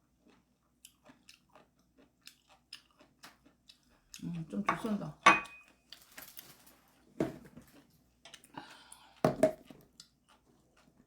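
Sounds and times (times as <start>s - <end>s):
tableware clicking: 5.3s - 5.6s.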